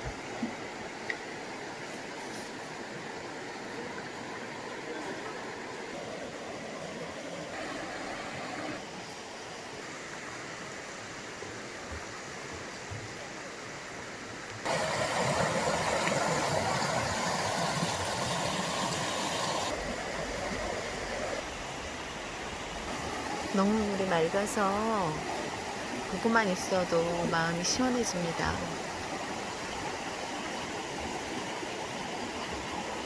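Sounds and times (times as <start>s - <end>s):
water rushing in a stream: 0.0s - 33.0s.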